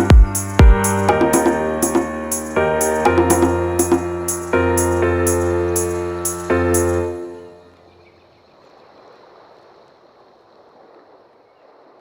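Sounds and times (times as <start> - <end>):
final music chord: 0.0 - 7.6.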